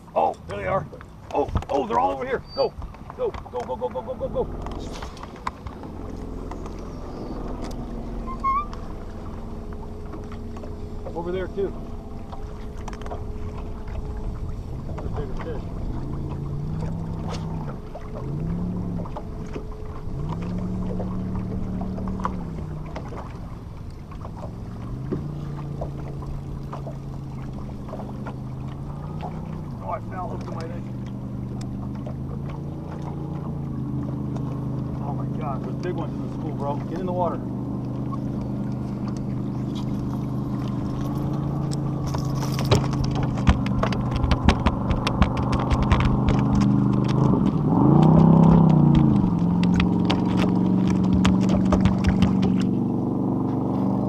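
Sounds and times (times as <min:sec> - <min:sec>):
boat motor humming: 0:00.0 - 0:54.0
sharp clicks and knocks: 0:41.7 - 0:52.7.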